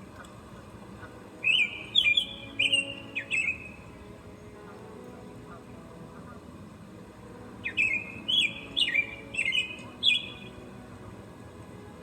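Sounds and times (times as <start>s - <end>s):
songbird singing: 0.1s - 4.9s, 7.6s - 11.1s.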